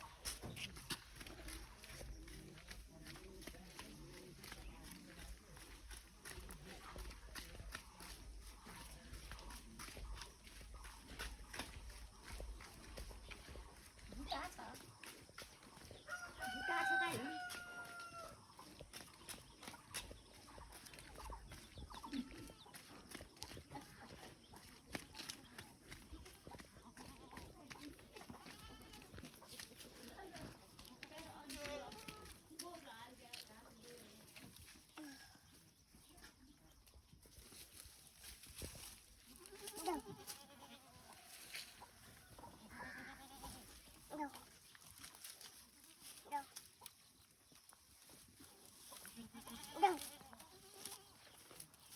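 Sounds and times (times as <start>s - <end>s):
chickens clucking: 0.0s - 51.9s
rooster crowing: 16.1s - 18.4s
goat bleating: 28.4s - 29.2s, 39.3s - 41.0s, 42.6s - 44.2s, 49.0s - 51.2s.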